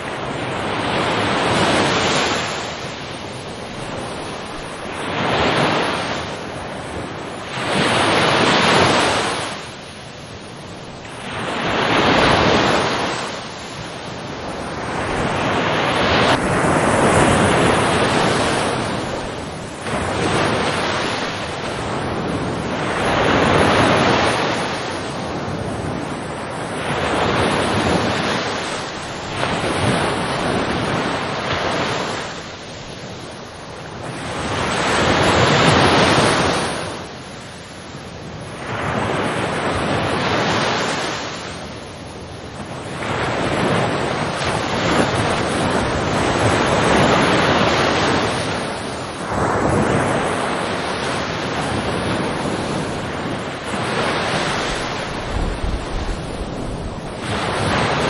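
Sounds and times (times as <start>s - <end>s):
ocean waves breaking on shore: 0.0s - 58.0s.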